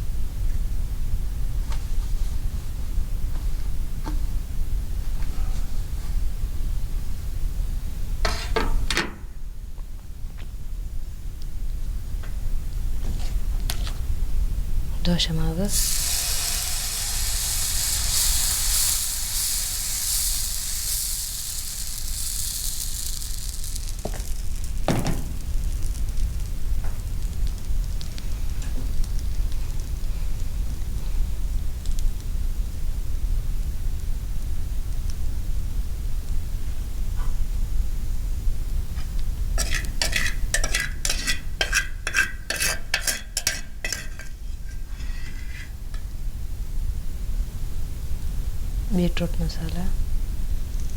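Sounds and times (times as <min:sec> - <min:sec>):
metal utensil scraping a pan: 0:08.2 - 0:08.8, 0:39.6 - 0:45.8
hot griddle sizzling: 0:15.1 - 0:37.0, 0:38.0 - 0:50.9.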